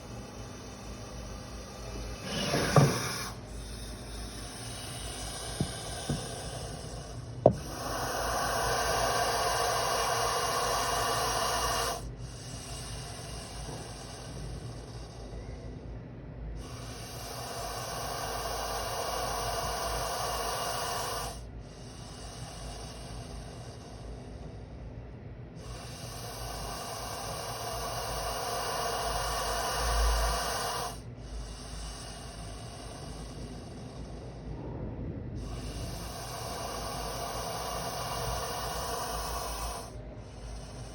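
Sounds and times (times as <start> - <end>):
snake hissing: 0.0 - 15.7, 16.6 - 24.8, 25.6 - 34.6, 35.4 - 40.9
dull low bump: 34.5 - 35.6.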